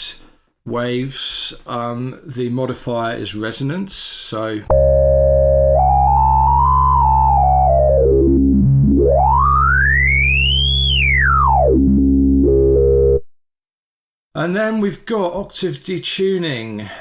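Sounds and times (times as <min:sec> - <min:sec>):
synthesizer resonance sweep: 0:04.7 - 0:13.3.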